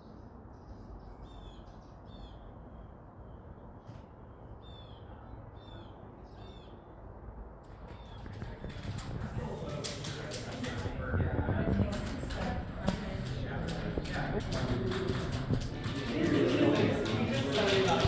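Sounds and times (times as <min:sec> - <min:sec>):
low background rumble: 0:07.7 - 0:17.1.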